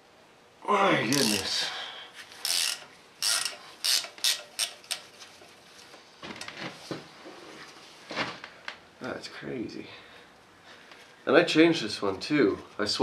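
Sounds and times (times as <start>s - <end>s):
ratchet clicking: 1.1s - 1.6s, 2.4s - 5.1s.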